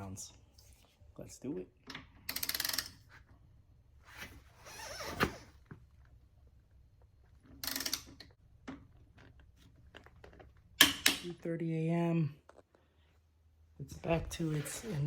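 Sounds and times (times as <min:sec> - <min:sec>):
wrench ratcheting: 0:02.3 - 0:03.0, 0:07.6 - 0:08.2.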